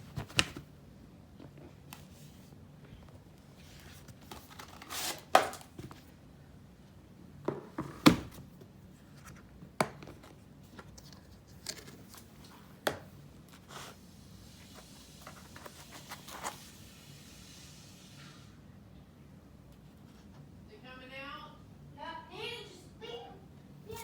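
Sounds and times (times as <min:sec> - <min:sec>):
packaging rustling and crinkling: 0:03.5 - 0:06.1.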